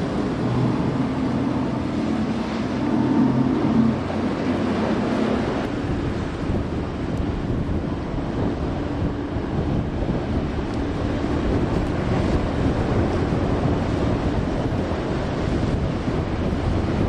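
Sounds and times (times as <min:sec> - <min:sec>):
ocean waves washing: 0:00.0 - 0:17.0
wind buffeting microphone: 0:00.0 - 0:17.0.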